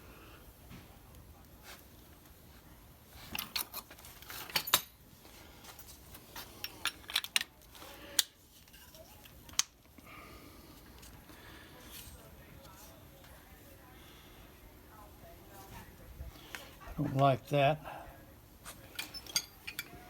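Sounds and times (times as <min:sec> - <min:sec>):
metal parts clicking and clacking: 0:03.3 - 0:05.0, 0:06.6 - 0:07.5, 0:18.9 - 0:20.0.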